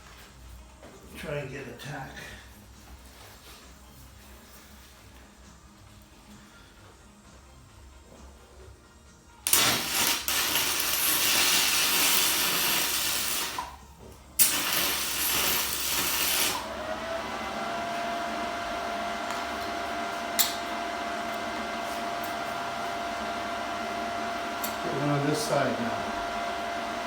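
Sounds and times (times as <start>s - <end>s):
welding arc crackling and hissing: 9.5s - 13.8s, 14.4s - 16.7s.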